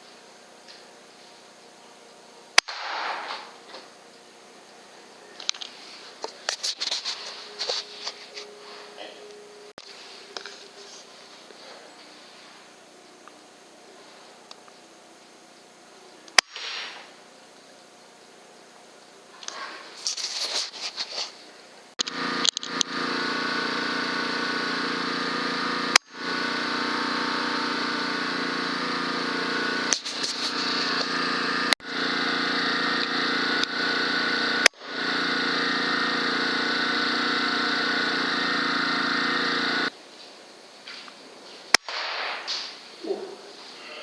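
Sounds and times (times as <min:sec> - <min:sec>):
machine humming: 0:00.0 - 0:39.9
crackling and rustling: 0:19.5 - 0:21.4.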